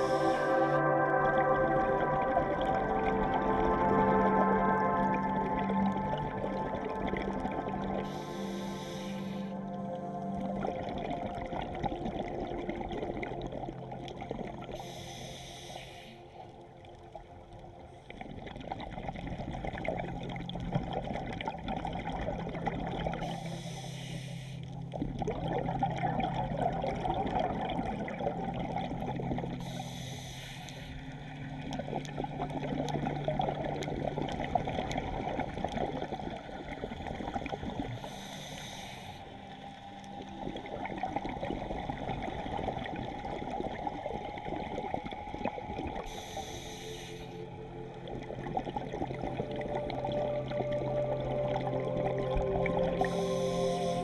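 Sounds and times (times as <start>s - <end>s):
regulator inhalation hiss: 8.1s - 9.5s, 14.8s - 16.4s, 23.3s - 24.7s, 29.6s - 31.0s, 38.0s - 39.6s, 46.1s - 47.5s, 53.0s - 54.0s
exhaled bubbles rushing: 25.0s - 29.6s, 47.4s - 54.0s.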